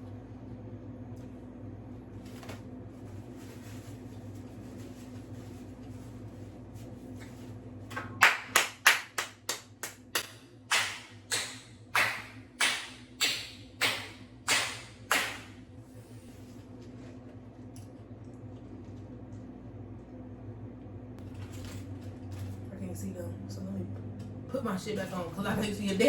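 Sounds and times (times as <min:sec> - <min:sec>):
hands clapping: 0:07.9 - 0:15.6.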